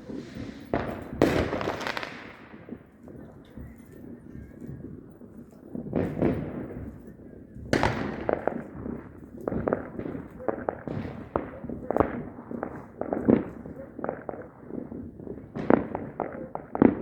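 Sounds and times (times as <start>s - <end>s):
crackling firework pops: 0.0s - 17.0s
fireworks bangs: 0.0s - 17.0s.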